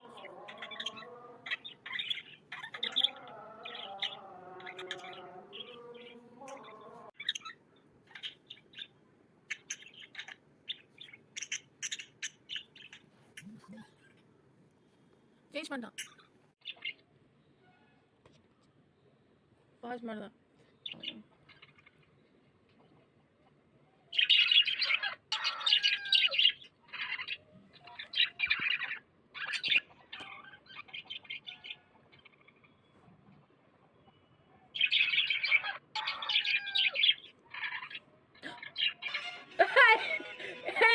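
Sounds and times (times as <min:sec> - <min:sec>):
lovebird chirping: 0:00.0 - 0:14.2, 0:15.6 - 0:17.9, 0:24.1 - 0:33.2, 0:33.9 - 0:40.4.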